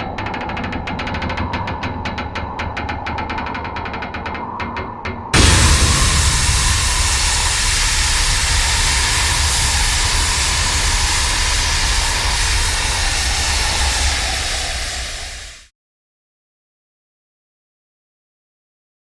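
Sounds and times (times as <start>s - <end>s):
deep rumble: 5.3s - 15.7s
gas release rushing hiss: 5.4s - 15.7s.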